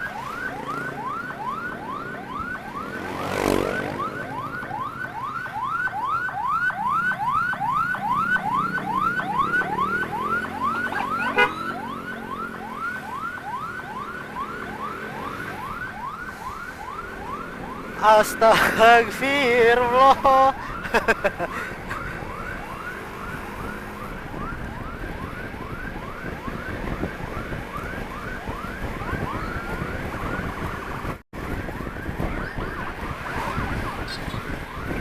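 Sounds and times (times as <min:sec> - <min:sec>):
electronic siren yelping: 0:00.0 - 0:35.0.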